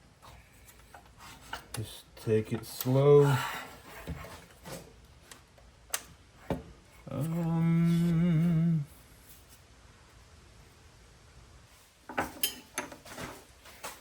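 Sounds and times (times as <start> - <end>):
man humming low note: 7.0 - 9.0.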